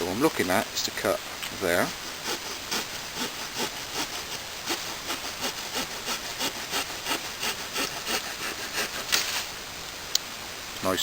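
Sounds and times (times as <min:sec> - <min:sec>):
saw blade sawing wood: 0:01.5 - 0:09.6.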